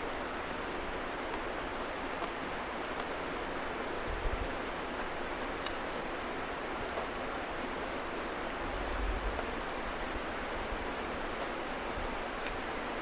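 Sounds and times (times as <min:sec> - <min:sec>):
steady background hiss: 0:00.0 - 0:13.0
bird chirping high: 0:00.1 - 0:00.4, 0:02.8 - 0:03.0, 0:04.0 - 0:04.2, 0:04.9 - 0:06.0, 0:09.4 - 0:10.3, 0:12.5 - 0:12.7.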